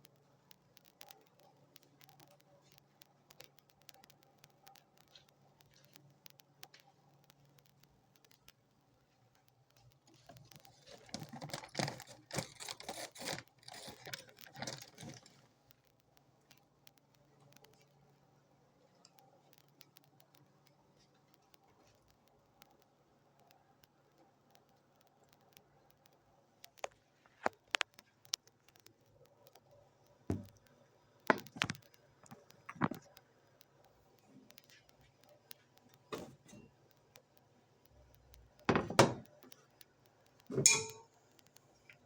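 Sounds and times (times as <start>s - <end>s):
clicking and rustling: 0.0s - 18.0s, 18.9s - 37.5s
faint steady hum: 0.0s - 42.0s
sharp clicks and knocks: 19.0s - 42.0s.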